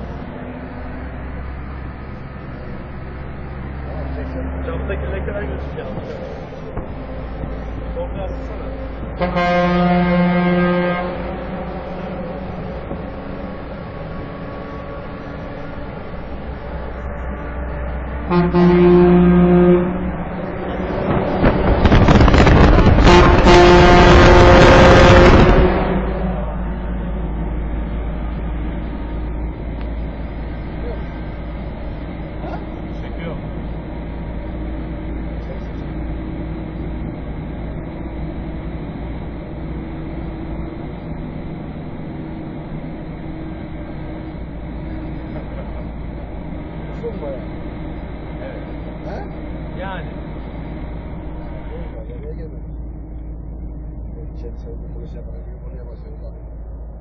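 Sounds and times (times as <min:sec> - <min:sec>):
low driving drone: 0:00.0 - 0:57.0
rush of noise: 0:00.0 - 0:57.0
vehicle road noise rumble: 0:00.0 - 0:57.0
vehicle air horn blasts: 0:09.1 - 0:12.9, 0:18.2 - 0:20.2, 0:22.3 - 0:26.4.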